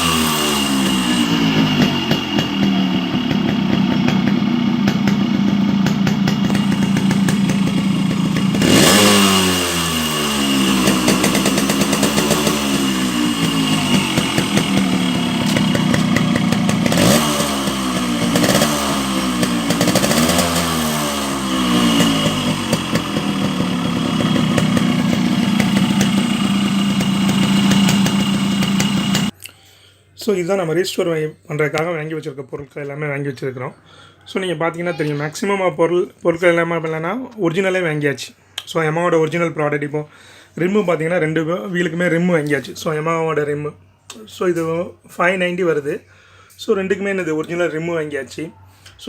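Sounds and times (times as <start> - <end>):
motorcycle engine idling and revving: 0.0 - 29.4.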